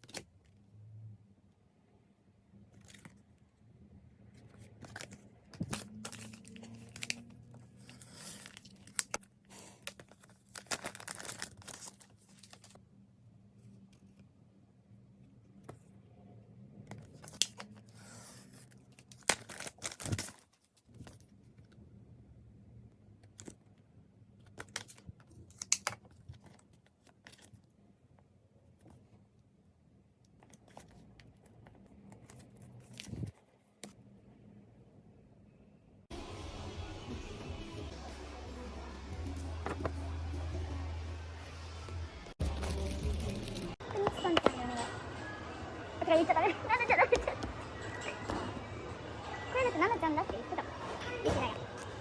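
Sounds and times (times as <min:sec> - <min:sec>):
packaging crinkling and rustling: 0:04.4 - 0:12.8, 0:18.9 - 0:21.3
packaging tearing and crinkling: 0:09.9 - 0:12.8, 0:19.1 - 0:20.7.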